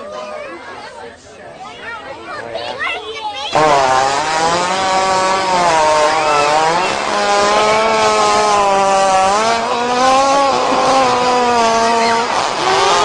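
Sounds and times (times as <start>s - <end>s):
long buzzing fart: 3.5s - 13.0s.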